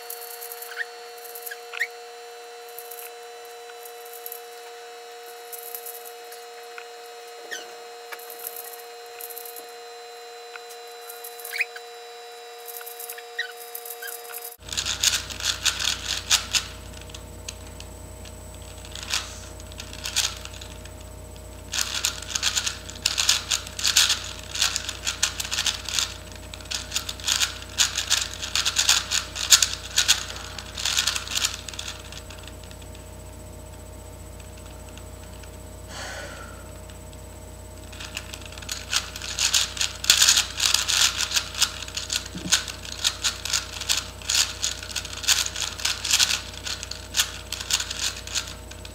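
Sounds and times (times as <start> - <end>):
rapid plastic clicking of puzzle cube: 2.7 - 4.6, 5.3 - 6.9, 12.6 - 36.1, 37.8 - 48.9.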